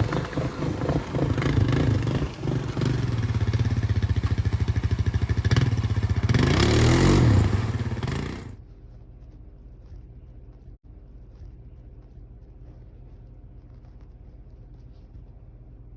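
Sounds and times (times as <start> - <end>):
motorcycle engine revving: 0.0 - 8.6
faint steady hum: 8.6 - 15.9.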